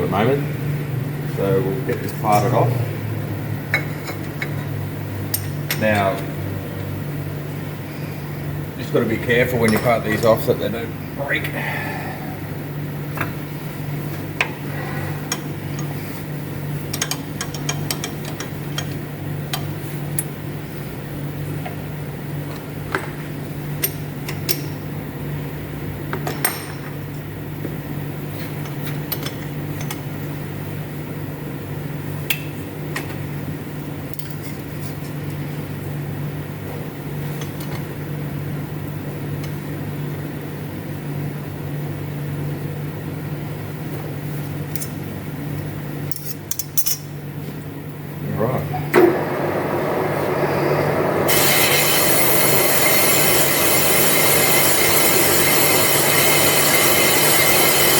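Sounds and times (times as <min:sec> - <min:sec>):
lathe humming: 0:48.9 - 0:57.9.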